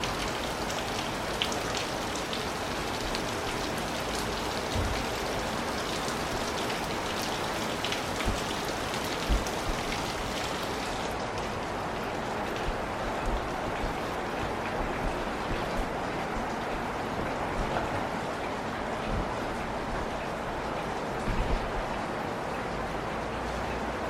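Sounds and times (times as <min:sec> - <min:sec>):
steady rain: 0:00.0 - 0:24.0
dull low thumps: 0:08.1 - 0:11.0.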